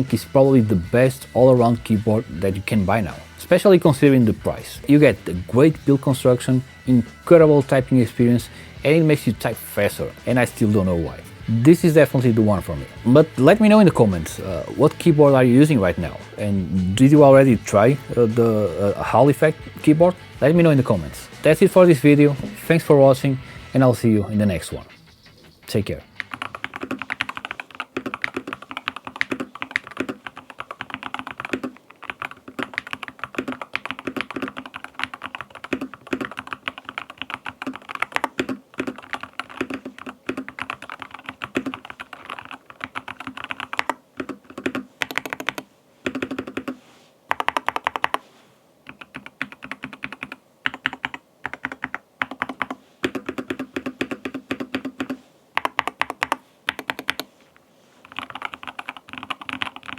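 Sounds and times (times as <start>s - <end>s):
typing on a keyboard: 26.2s - 48.2s, 48.9s - 57.3s, 58.0s - 59.9s.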